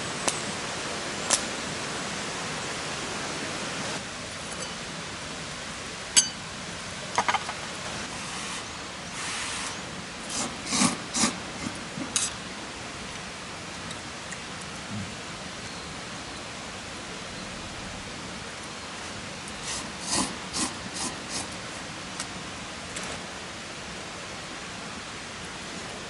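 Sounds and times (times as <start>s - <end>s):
campfire hissing: 7.8s - 26.0s.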